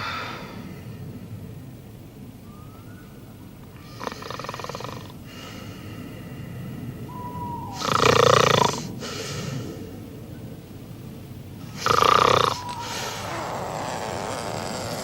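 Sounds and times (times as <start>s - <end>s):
faint whistling breath: 0.0s - 1.3s, 2.4s - 4.3s, 5.3s - 10.6s, 11.7s - 14.1s
man snoring loudly: 3.8s - 5.2s, 7.8s - 8.9s, 11.7s - 15.0s.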